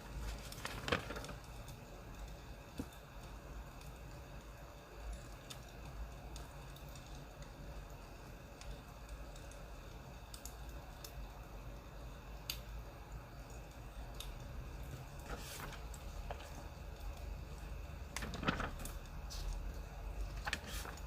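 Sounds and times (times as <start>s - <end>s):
wood fire popping and snapping: 12.4s - 12.7s, 13.4s - 21.0s.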